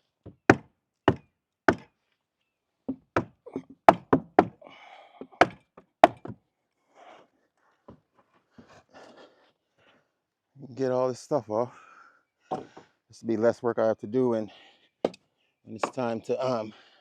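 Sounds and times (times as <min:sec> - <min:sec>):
hammer knocking on wooden boards: 0:00.3 - 0:01.9, 0:02.9 - 0:04.6, 0:05.2 - 0:06.4, 0:12.5 - 0:12.8, 0:15.8 - 0:16.1.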